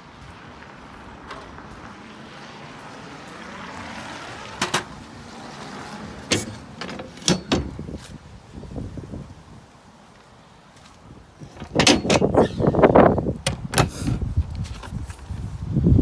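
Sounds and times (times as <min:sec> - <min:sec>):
trailer fittings clunking and rattling: 0:04.5 - 0:08.3, 0:11.2 - 0:15.2.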